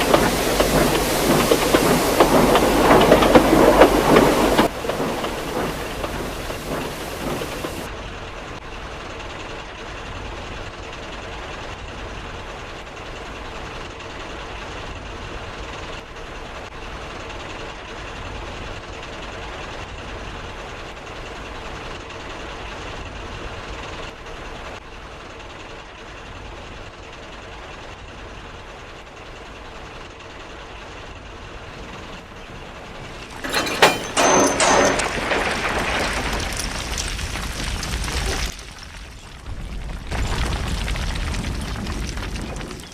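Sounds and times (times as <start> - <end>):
train rumbling and rattling: 0.0 - 12.9, 31.4 - 38.5.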